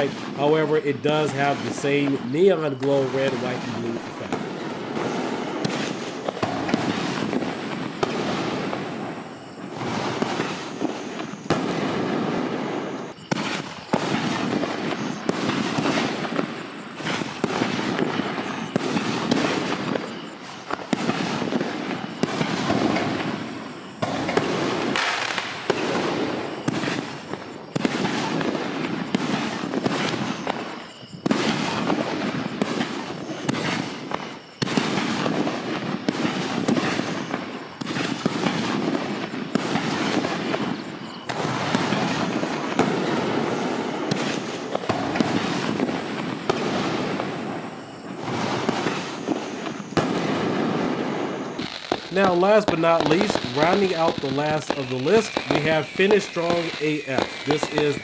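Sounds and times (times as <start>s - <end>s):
firework shells crackling: 0.0s - 8.9s, 51.5s - 58.0s.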